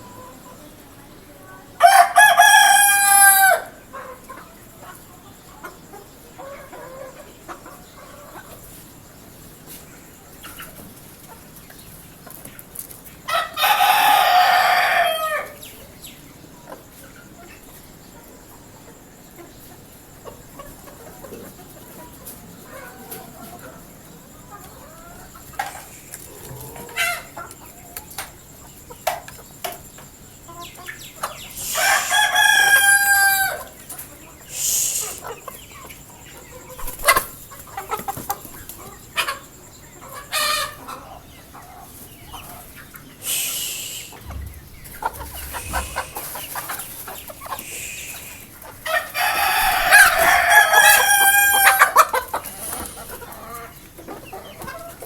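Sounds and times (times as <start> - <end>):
hens clucking: 0.0 - 55.0
roosters crowing: 1.8 - 4.6, 13.3 - 15.8, 22.6 - 28.2, 30.5 - 55.0.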